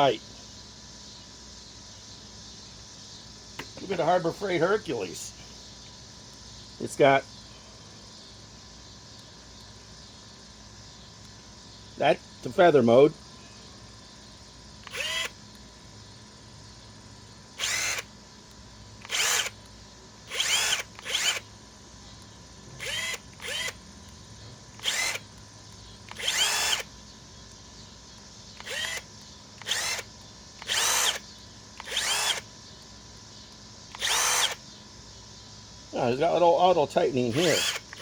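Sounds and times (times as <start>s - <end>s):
impact driver whirring: 14.8s - 15.5s, 17.6s - 21.6s, 22.7s - 23.9s, 24.6s - 34.6s, 37.2s - 38.0s.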